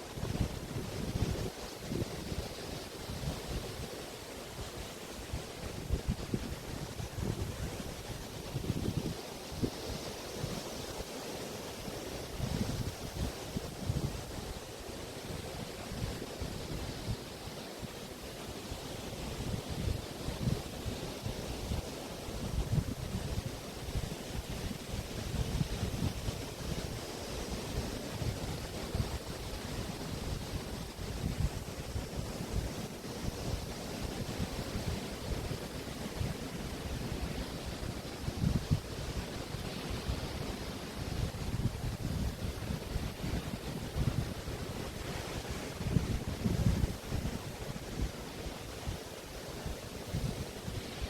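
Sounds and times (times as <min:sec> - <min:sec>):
wind gusting against microphone: 0:00.0 - 0:10.9, 0:11.8 - 0:51.0
waves washing on beach: 0:00.0 - 0:51.0
wind buffeting microphone: 0:05.2 - 0:09.8, 0:27.8 - 0:48.2.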